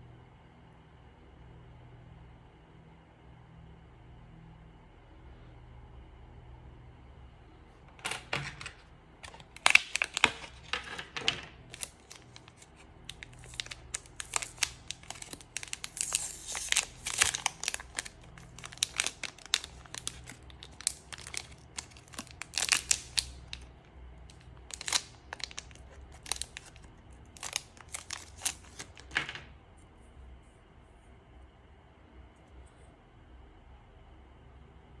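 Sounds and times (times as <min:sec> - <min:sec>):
plastic crinkling and rustling: 0:08.0 - 0:29.4.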